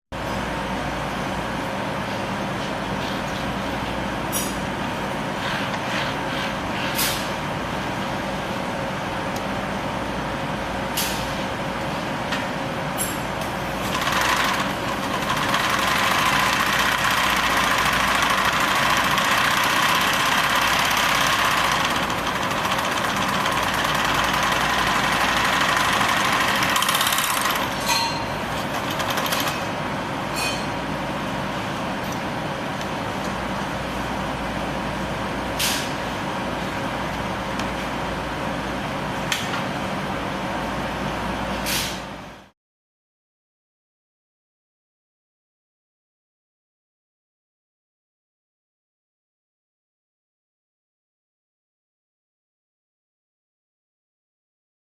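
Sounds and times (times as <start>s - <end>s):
sewing machine sewing: 13.8s - 27.8s, 28.5s - 29.7s.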